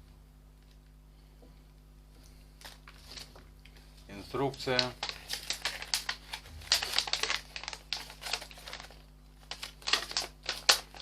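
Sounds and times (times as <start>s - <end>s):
paper rustling and crinkling: 2.6s - 11.0s.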